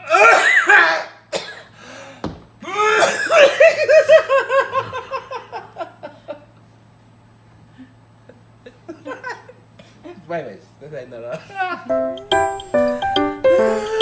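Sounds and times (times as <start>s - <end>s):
person sneezing: 0.0s - 1.7s, 2.7s - 3.6s
person laughing: 11.4s - 12.2s, 13.5s - 14.0s.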